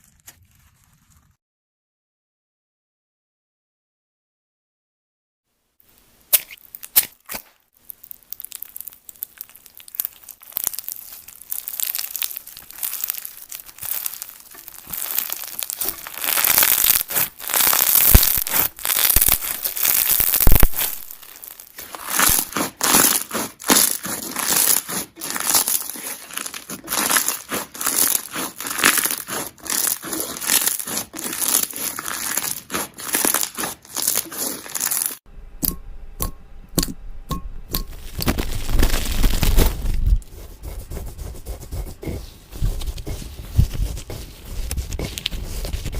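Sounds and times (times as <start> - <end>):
slime crackling and popping: 6.3 - 35.8, 37.7 - 40.2.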